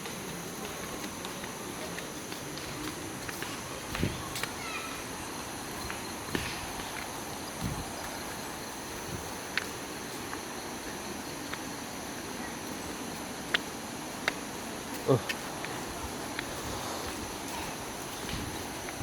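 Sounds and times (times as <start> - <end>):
insects buzzing: 0.0 - 19.0.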